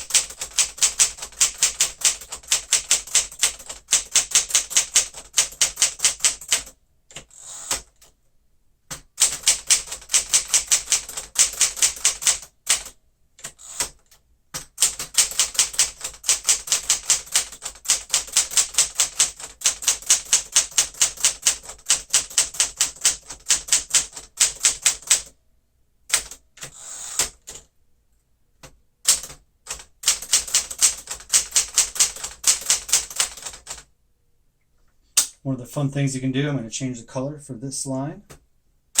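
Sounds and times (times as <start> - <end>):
typewriter keys striking: 0.0 - 8.1, 8.9 - 25.3, 29.1 - 33.8.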